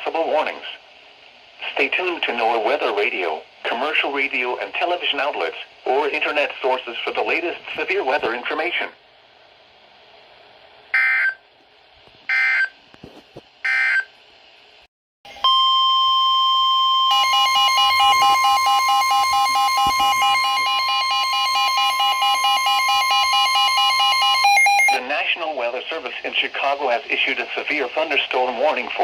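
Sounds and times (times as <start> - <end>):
steady alert tone: 17.0 - 25.0
buzzing digital data tones: 17.1 - 25.0.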